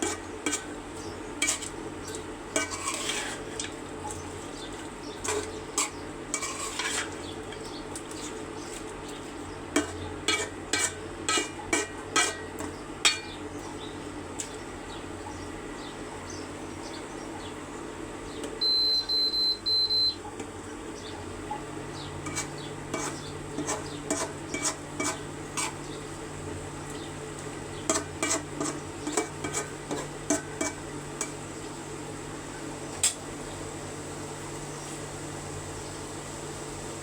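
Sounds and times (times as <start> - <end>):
metal spoon scraping cooking pot: 0.0 - 8.9, 9.7 - 13.4, 22.0 - 25.9, 27.8 - 31.4
short high electronic beeps: 18.6 - 20.2.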